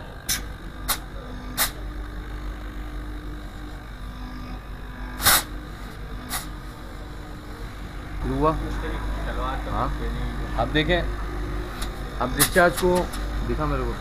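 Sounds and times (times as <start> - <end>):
compressor humming: 0.0 - 14.0
air spurts from pipe: 5.2 - 5.5.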